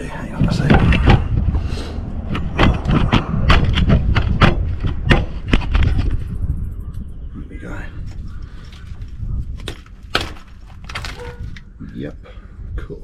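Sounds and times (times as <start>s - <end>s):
metal parts knocking and clinking: 9.6s - 11.7s.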